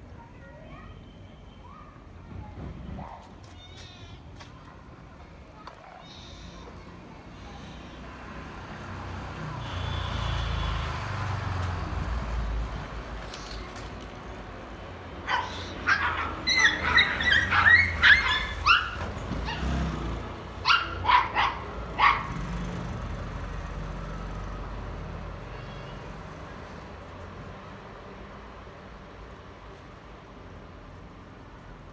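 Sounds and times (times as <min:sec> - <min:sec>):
puppy yipping: 0:15.2 - 0:19.8, 0:20.6 - 0:22.4.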